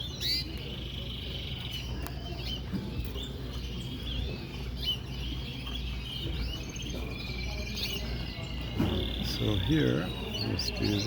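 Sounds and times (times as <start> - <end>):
canaries chirping and trilling: 0.0 - 11.0.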